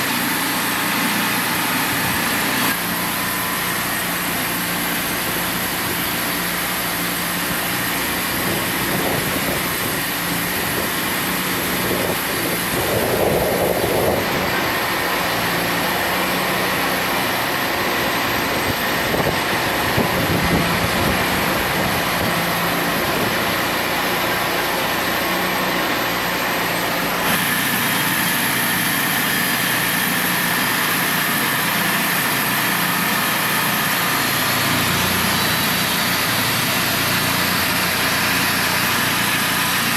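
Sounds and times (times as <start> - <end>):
band sawmill running: 0.0 - 39.9.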